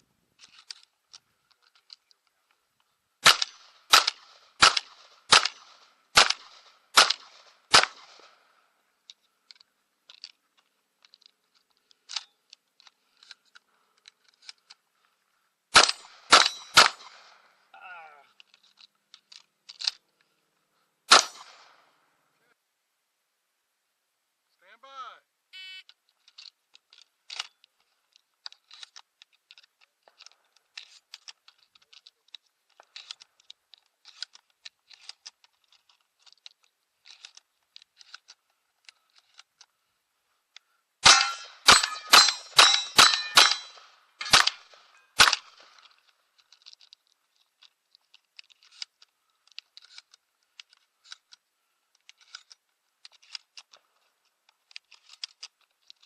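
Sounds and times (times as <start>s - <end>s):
shotgun shots: 3.2s - 8.4s, 15.7s - 17.4s, 21.1s - 21.8s, 41.0s - 45.8s
faint clicks and knocks: 25.9s - 40.8s, 45.6s - 56.0s.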